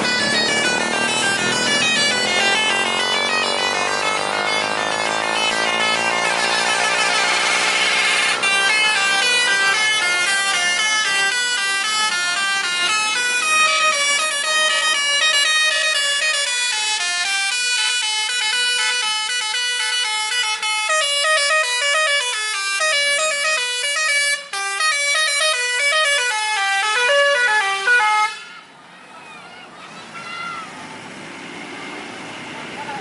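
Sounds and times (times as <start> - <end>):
bus horn playing a tune: 0.0 - 28.7.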